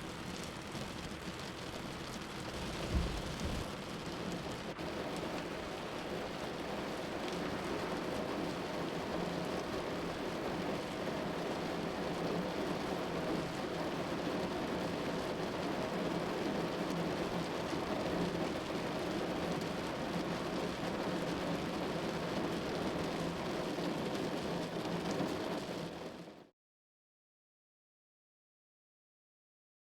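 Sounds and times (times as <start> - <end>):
car tyres on wet road: 0.0 - 26.3
rain hiss: 0.0 - 26.3.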